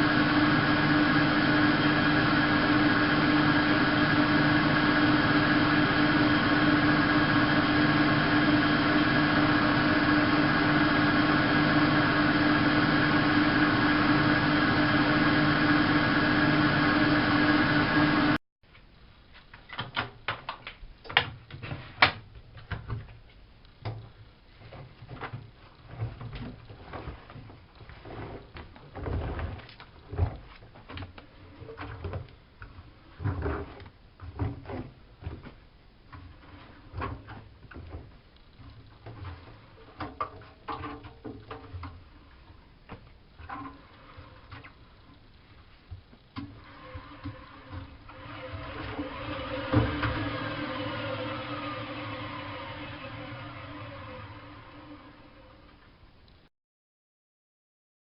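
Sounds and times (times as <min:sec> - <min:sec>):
washing machine motor whine: 0:00.0 - 0:18.4, 0:46.4 - 0:56.0.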